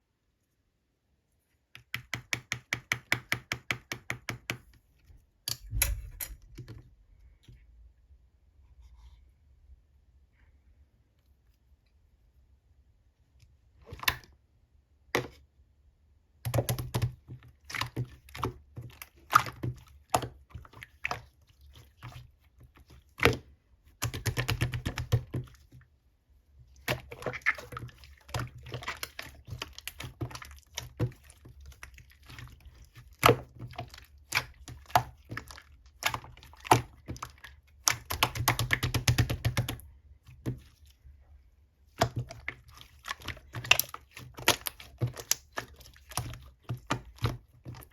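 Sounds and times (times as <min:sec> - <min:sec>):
slime squished by hand: 0:26.7 - 0:41.0, 0:41.9 - 0:47.9.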